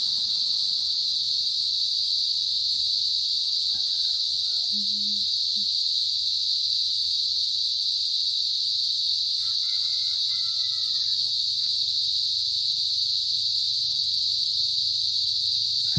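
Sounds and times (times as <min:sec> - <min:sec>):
cicadas buzzing: 0:00.0 - 0:15.9.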